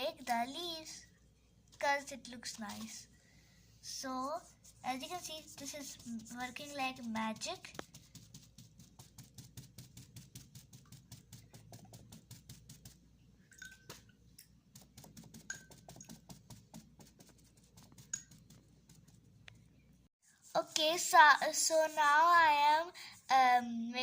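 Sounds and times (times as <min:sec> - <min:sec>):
soft taps of paint dabbing: 0:05.5 - 0:19.6.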